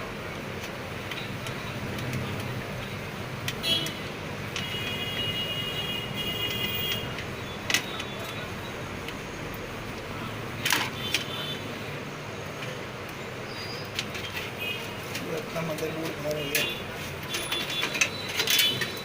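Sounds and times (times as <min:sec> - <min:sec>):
computer parts clicking and knocking: 0:00.5 - 0:05.4, 0:06.3 - 0:09.2, 0:13.9 - 0:19.0.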